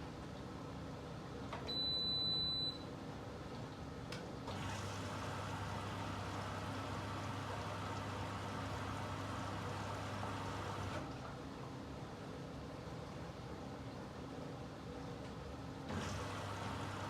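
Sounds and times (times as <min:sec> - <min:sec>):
washing machine hum: 0:00.0 - 0:17.0
high beep: 0:01.7 - 0:02.8
water running into machine: 0:04.5 - 0:11.4, 0:15.9 - 0:17.0.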